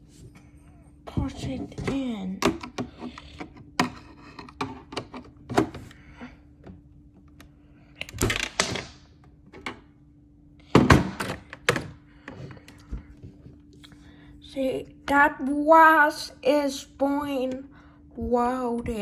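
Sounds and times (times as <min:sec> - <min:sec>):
faint steady hum: 0:00.0 - 0:19.0
plastic toy door clicks and thunks: 0:08.0 - 0:09.0.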